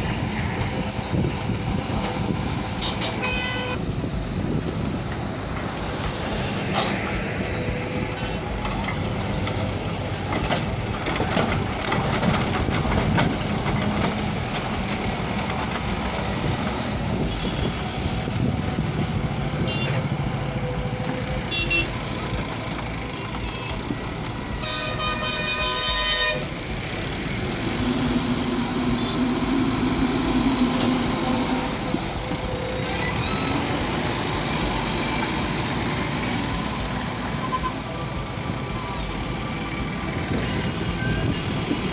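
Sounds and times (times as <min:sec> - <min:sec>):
diesel engine running: 0:00.0 - 0:41.9
vehicle horn: 0:02.8 - 0:03.8, 0:19.6 - 0:20.2, 0:21.5 - 0:22.1, 0:24.6 - 0:26.6.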